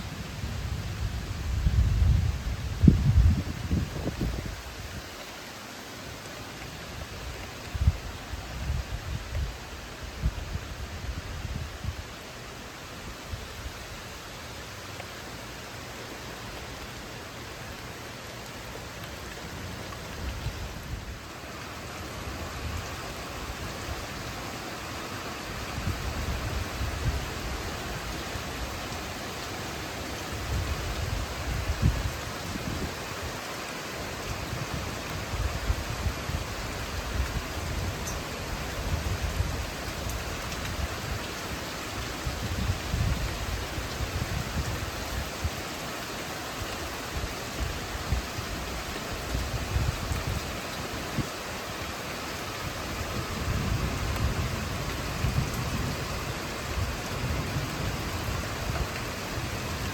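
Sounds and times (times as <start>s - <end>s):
steady rain falling: 0.0s - 59.9s.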